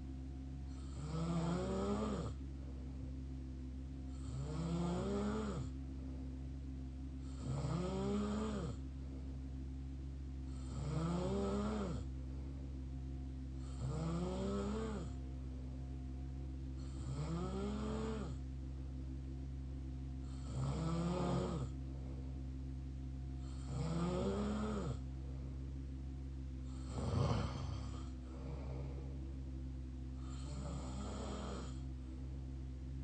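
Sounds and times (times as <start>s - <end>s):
steady low hum: 0.0s - 33.0s
mouth snoring: 0.7s - 2.4s, 4.2s - 5.7s, 7.2s - 8.8s, 10.5s - 12.1s, 13.6s - 15.2s, 16.8s - 18.4s, 20.3s - 21.7s, 23.4s - 25.0s, 26.7s - 28.6s, 30.2s - 31.8s.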